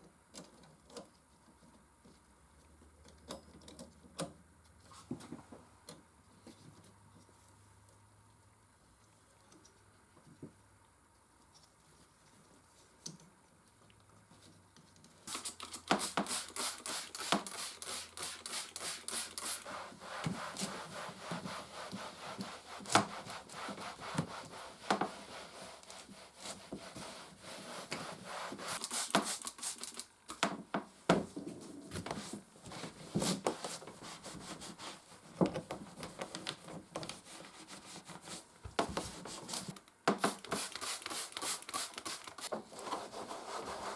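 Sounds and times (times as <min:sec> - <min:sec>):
rubbing and scrubbing: 0:15.4 - 0:29.9, 0:31.7 - 0:43.9.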